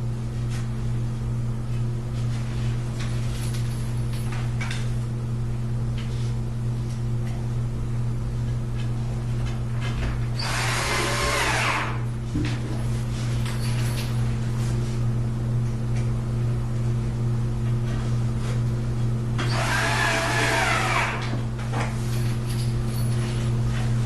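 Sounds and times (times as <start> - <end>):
power drill running: 10.4 - 12.0, 19.4 - 21.3.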